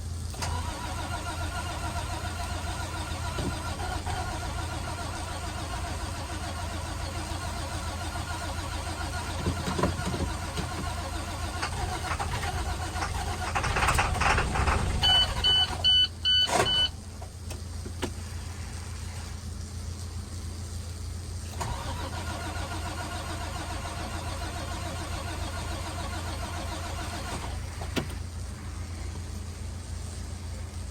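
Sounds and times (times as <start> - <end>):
truck engine running: 0.4 - 30.9
short electronic beeps: 15.0 - 16.9.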